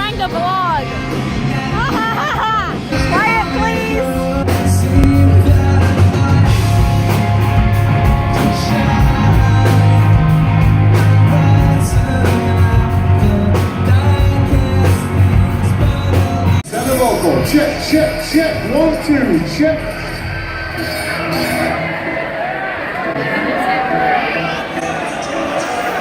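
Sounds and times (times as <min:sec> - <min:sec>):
loud rock music: 0:00.0 - 0:26.0
person singing: 0:00.8 - 0:18.4.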